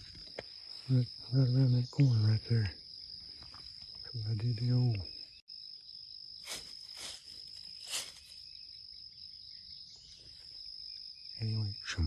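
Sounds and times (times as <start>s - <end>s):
insects droning: 0.0s - 12.0s
rustling scrapes: 6.4s - 8.5s.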